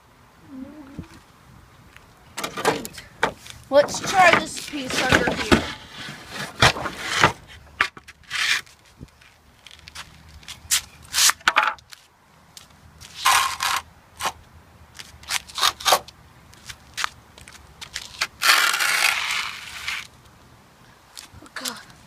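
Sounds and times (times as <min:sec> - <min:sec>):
wooden boards scraping and knocking: 0:02.4 - 0:08.8, 0:11.2 - 0:11.8, 0:13.2 - 0:13.8.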